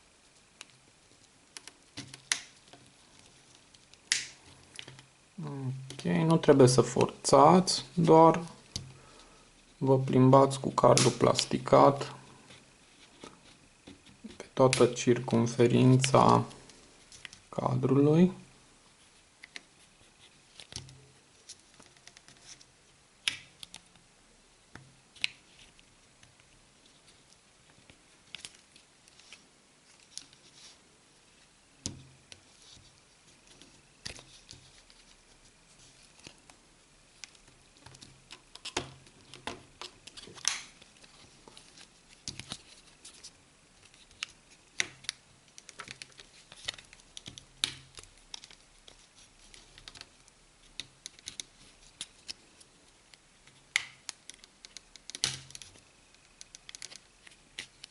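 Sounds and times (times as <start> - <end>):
plastic card scraping and clicking: 1.5 - 5.1, 37.2 - 52.4, 53.5 - 57.9.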